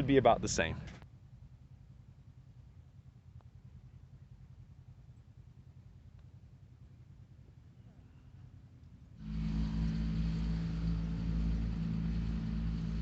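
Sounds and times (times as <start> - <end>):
golf cart motor hum: 8.8 - 13.0.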